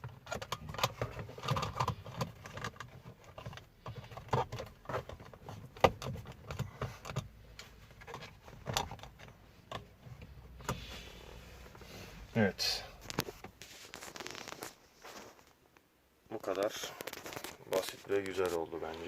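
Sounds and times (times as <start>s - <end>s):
plastic trim clicking and rattling: 0.0s - 9.9s.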